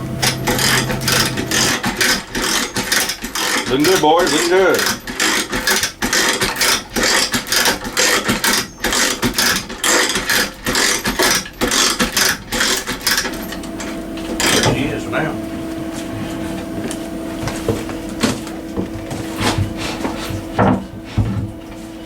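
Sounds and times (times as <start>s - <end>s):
steady hum: 0.0s - 2.2s, 13.3s - 22.0s
chain hoist ratcheting: 0.2s - 13.6s.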